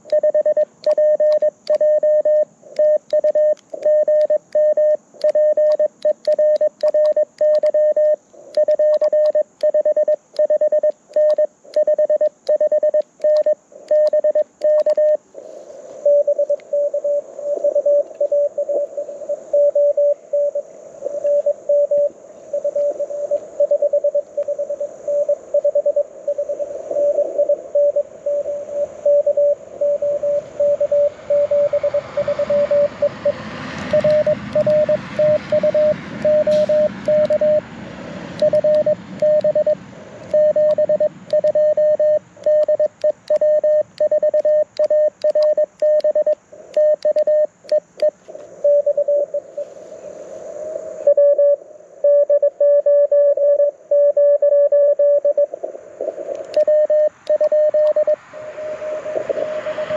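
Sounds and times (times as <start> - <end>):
morse code tones: 0.0 - 15.2, 16.0 - 37.7, 38.4 - 49.4, 51.1 - 59.9
radio band hiss: 13.5 - 37.7, 48.0 - 52.0, 55.4 - 59.9.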